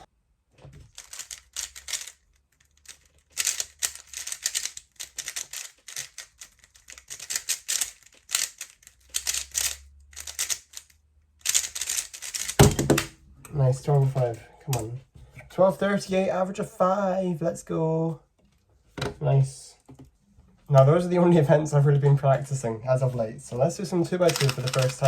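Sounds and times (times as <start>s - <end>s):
puzzle cube clicking and rattling: 0.8s - 13.1s, 24.2s - 25.0s.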